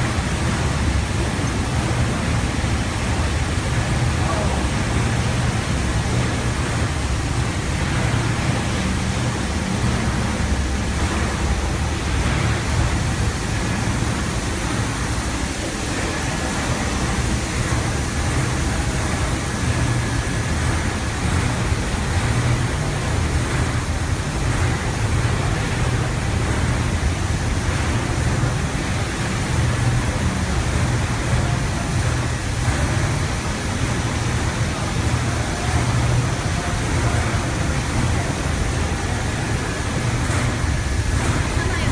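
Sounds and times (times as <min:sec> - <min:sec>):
carpet washing machine running: 0:00.0 - 0:41.9.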